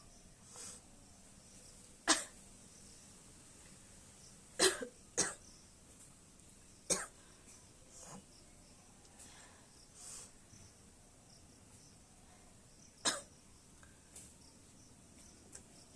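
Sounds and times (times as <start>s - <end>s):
woman coughing: 4.6s - 5.4s, 13.1s - 13.3s.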